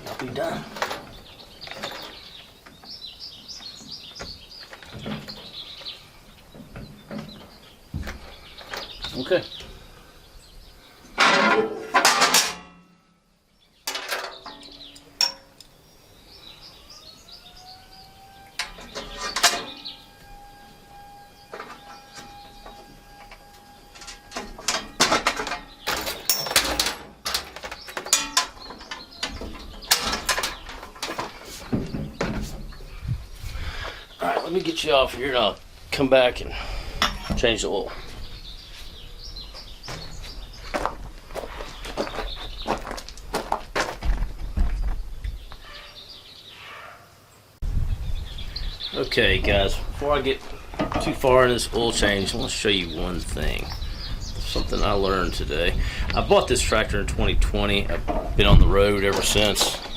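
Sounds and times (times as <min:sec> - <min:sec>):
small birds chirping: 0:00.0 - 0:11.2, 0:13.3 - 0:59.9
knocks and clanks on metal: 0:03.8 - 0:09.8, 0:11.2 - 0:13.1, 0:13.8 - 0:15.7, 0:18.6 - 0:20.0, 0:21.4 - 0:32.9, 0:50.7 - 0:51.3, 0:57.3 - 0:59.9.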